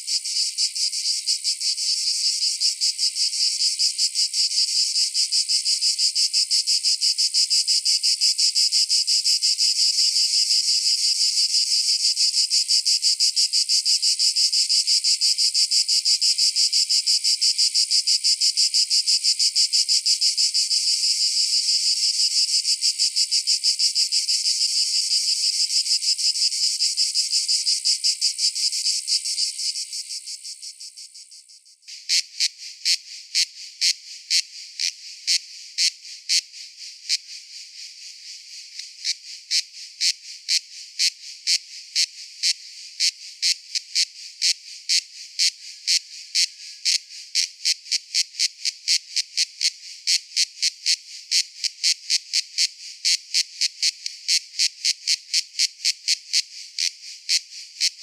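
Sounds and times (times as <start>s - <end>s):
sharp insect chirps: 19.8s - 40.6s.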